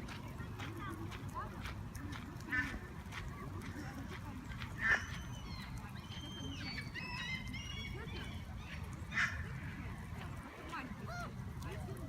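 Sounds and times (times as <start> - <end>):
goose honk: 2.5 - 2.8, 9.1 - 9.5
gosling peeps: 4.8 - 9.7.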